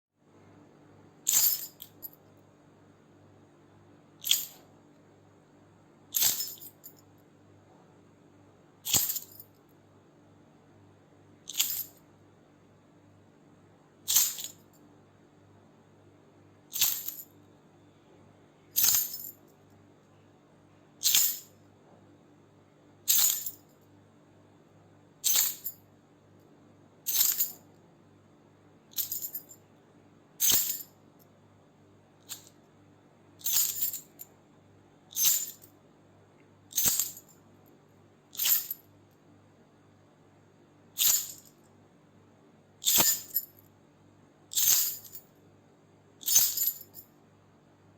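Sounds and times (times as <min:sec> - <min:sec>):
metal keys jingling: 0:01.3 - 0:02.1, 0:04.2 - 0:04.6, 0:06.2 - 0:06.9, 0:08.9 - 0:09.4, 0:11.5 - 0:11.9, 0:14.1 - 0:14.6, 0:16.8 - 0:17.2, 0:18.8 - 0:19.4, 0:21.0 - 0:21.5, 0:23.1 - 0:23.6, 0:25.2 - 0:25.8, 0:27.1 - 0:27.6, 0:28.9 - 0:29.6, 0:30.4 - 0:30.9, 0:32.3 - 0:32.5, 0:33.4 - 0:34.2, 0:35.2 - 0:35.7, 0:36.7 - 0:37.3, 0:38.4 - 0:38.8, 0:41.0 - 0:41.5, 0:42.8 - 0:43.5, 0:44.5 - 0:45.2, 0:46.2 - 0:47.0.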